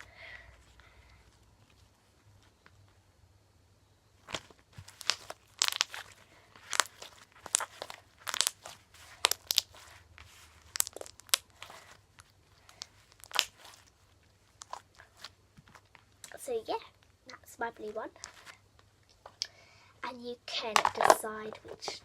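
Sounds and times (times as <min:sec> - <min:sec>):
slime squished in hands: 0:04.9 - 0:15.3.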